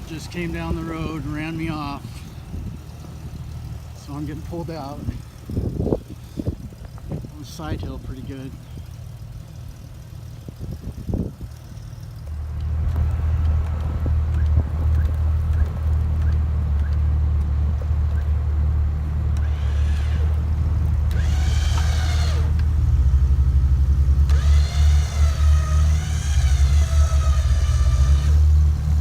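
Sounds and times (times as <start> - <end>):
vehicle engine under load: 0.0 - 29.0.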